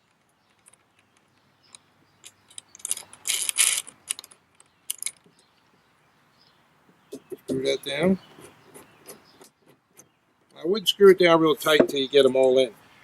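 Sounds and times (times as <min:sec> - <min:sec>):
small metal hardware clinking: 0:00.0 - 0:05.3.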